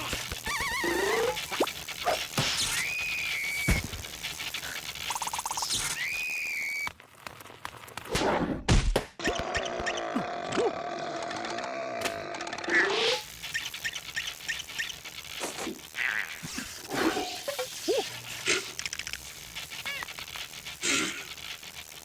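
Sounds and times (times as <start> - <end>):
squeaky character noises: 0.0 - 3.8, 11.3 - 19.0, 19.7 - 21.2
whistle-like tones: 2.6 - 3.8, 5.8 - 6.9.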